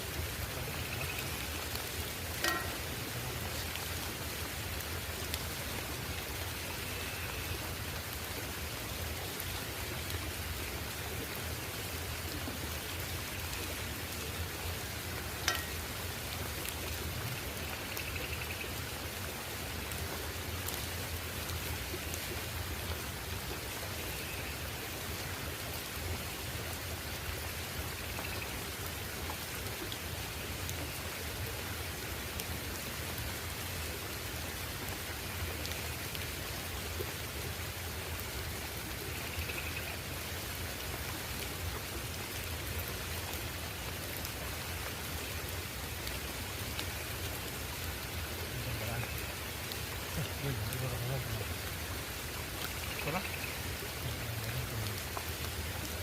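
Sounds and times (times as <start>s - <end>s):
steady rain: 0.0s - 56.0s
sharp drip ticks: 0.7s - 4.0s, 15.2s - 18.8s.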